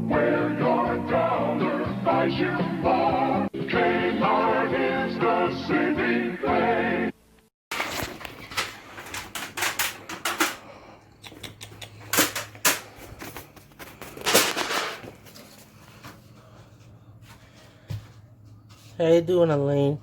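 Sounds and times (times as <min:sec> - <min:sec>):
rustling scrape: 0:07.7 - 0:10.6, 0:12.8 - 0:16.4.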